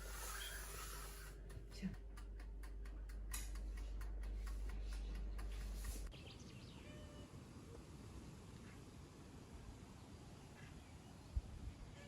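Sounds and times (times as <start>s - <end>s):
steady low hum: 0.0s - 6.5s.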